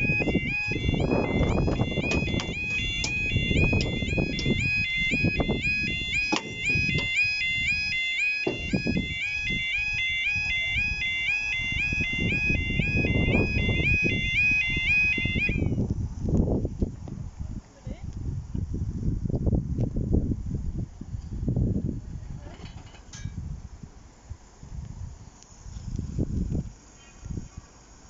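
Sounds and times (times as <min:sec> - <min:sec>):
level crossing alarm warbling: 0:00.0 - 0:15.8.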